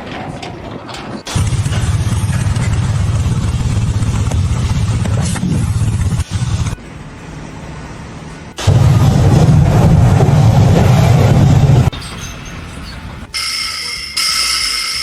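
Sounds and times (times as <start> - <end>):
engine running loudly: 1.3 - 11.9.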